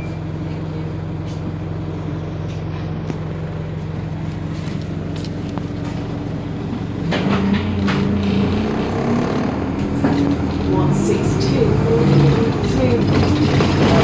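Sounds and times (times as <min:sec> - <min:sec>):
bus diesel engine running: 0:00.0 - 0:14.0.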